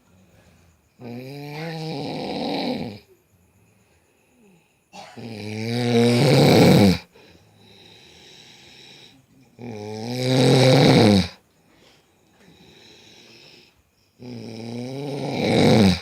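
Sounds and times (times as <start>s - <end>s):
quiet breathing: 0.0s - 1.7s, 2.7s - 5.0s, 7.0s - 9.8s, 11.3s - 14.8s
person snoring loudly: 1.0s - 3.1s, 5.2s - 11.4s, 12.5s - 16.0s.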